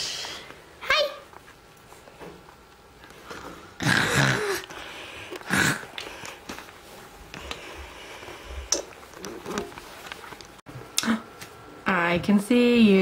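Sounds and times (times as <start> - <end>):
person fake snoring: 3.4 - 6.0.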